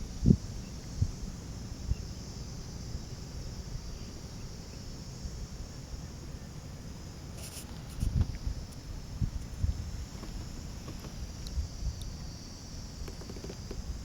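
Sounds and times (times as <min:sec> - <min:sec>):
high insect drone: 0:00.0 - 0:14.0
wind rumble on microphone: 0:00.0 - 0:14.0
faint clicks: 0:13.0 - 0:13.8.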